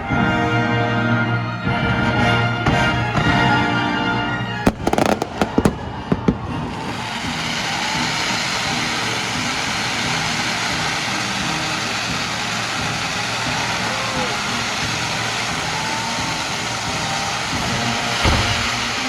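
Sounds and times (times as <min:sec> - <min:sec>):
orchestral music: 0:00.0 - 0:19.0
fireworks crackling: 0:04.4 - 0:19.0
fireworks bangs: 0:04.6 - 0:19.0.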